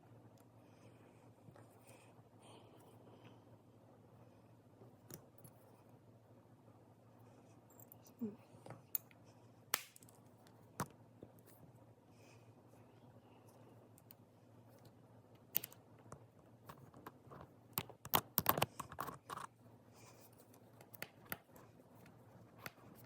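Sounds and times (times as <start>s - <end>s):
tiny screws clicking and scraping: 16.7s - 21.7s.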